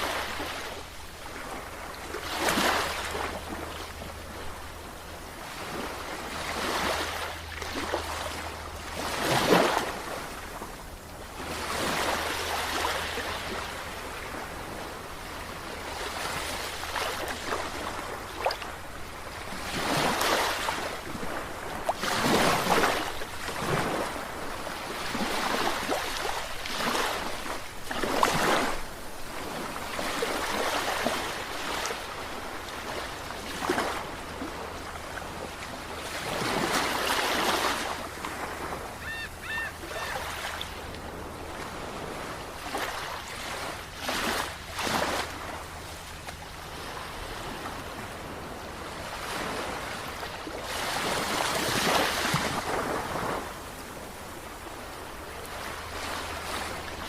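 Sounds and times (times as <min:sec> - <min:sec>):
sea surf washing: 0:11.3 - 0:46.0.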